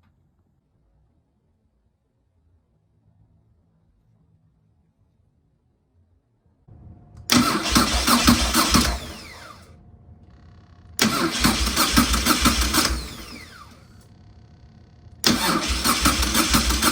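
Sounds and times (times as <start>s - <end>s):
faint steady hum: 0.0s - 16.8s
starter whine winding down: 6.7s - 16.9s
starter cranking engine: 7.2s - 9.7s, 10.3s - 16.9s.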